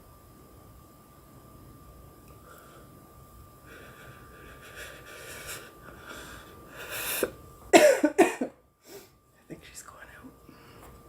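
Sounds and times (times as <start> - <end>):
woman inhaling: 3.7 - 7.4
woman coughing: 7.7 - 8.6.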